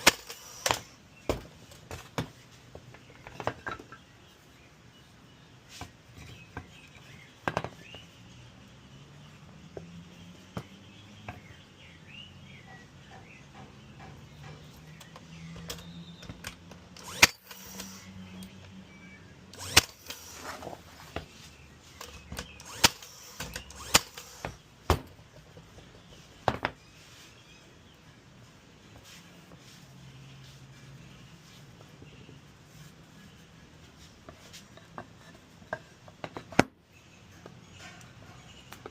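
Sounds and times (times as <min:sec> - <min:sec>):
sharp knocks and clicks: 0:12.6 - 0:17.6.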